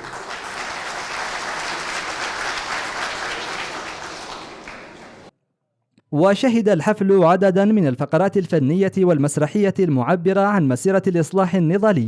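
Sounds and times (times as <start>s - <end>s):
audience applauding: 0.0s - 5.3s.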